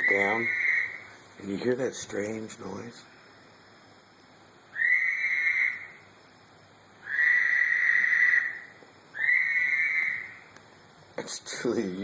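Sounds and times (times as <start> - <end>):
high-pitched animal calls: 0.0 - 1.2, 4.7 - 6.1, 7.0 - 10.5.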